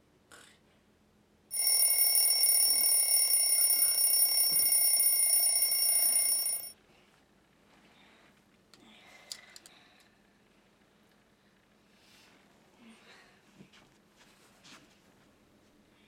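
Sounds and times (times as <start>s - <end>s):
alarm bell ringing: 1.5s - 6.7s.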